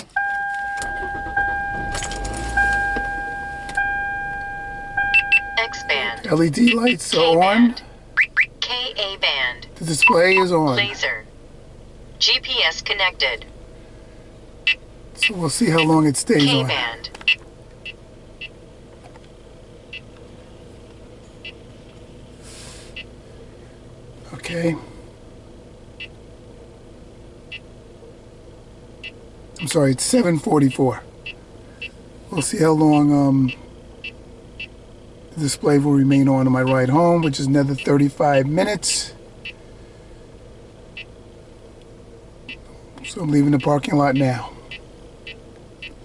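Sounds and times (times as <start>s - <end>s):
car engine starting: 0.0s - 46.0s
car warning chime: 0.1s - 11.4s, 14.6s - 18.6s, 29.0s - 34.8s, 35.5s - 38.8s, 42.5s - 46.0s
short high beeps: 0.2s - 7.0s, 10.0s - 11.0s
radar detector voice alert: 2.6s - 11.3s, 12.2s - 13.5s, 15.2s - 17.1s, 29.6s - 31.0s, 32.3s - 33.6s, 35.4s - 39.2s, 42.5s - 44.8s.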